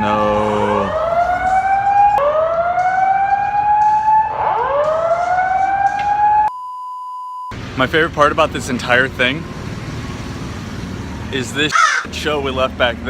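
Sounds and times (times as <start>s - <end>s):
whooping emergency alarm: 0.1s - 6.5s.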